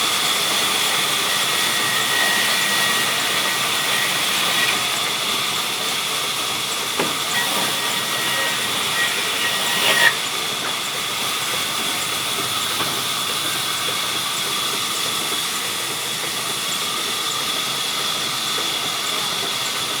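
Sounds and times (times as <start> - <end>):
sawmill machinery hiss and whine: 0.0 - 20.0.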